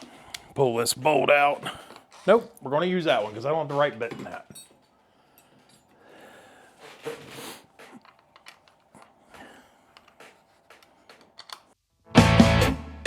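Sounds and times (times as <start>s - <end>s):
tools scraping: 0.0s - 11.8s
light clicks: 7.6s - 11.8s.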